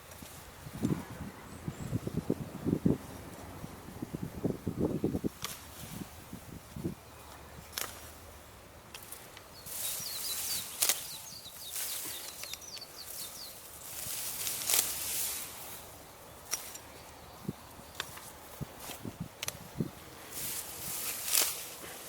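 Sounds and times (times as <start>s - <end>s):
rustling swishes of weeds cut: 4.9s - 22.0s
small bird chirping: 9.5s - 15.0s.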